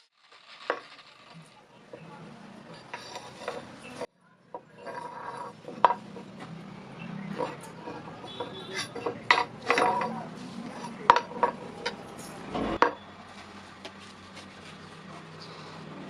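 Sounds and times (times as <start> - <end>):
metal knocking on metal: 2.6 - 13.0.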